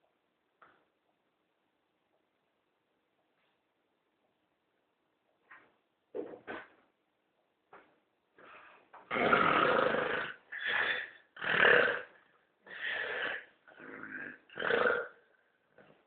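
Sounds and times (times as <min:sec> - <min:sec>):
man snoring loudly: 0:09.1 - 0:12.1, 0:12.7 - 0:15.2.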